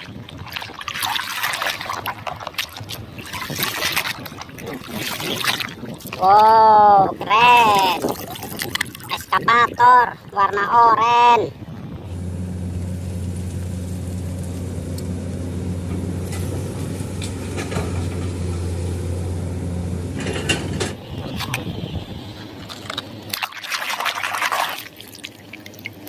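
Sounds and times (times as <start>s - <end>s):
low motor hum: 11.5s - 26.0s.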